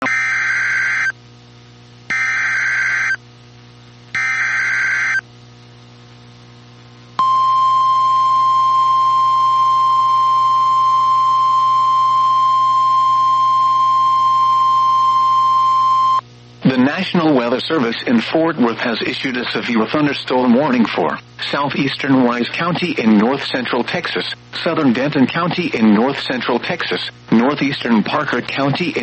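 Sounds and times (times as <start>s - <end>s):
warbling digital data tones: 4.2s - 5.2s
steady attention tone: 7.2s - 16.2s.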